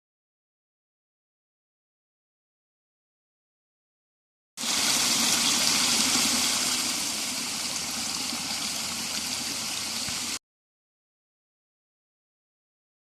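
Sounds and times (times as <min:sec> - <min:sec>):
waterfall pouring into creek: 0:04.6 - 0:10.4.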